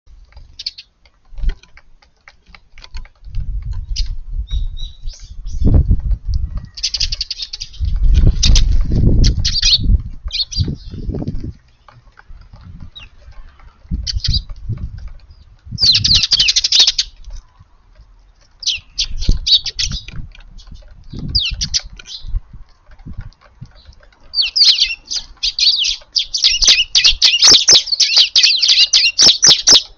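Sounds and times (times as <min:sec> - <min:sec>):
sparrows chirping: 0:00.1 - 0:02.8, 0:03.7 - 0:29.9
wing flutters and thuds: 0:00.1 - 0:17.4.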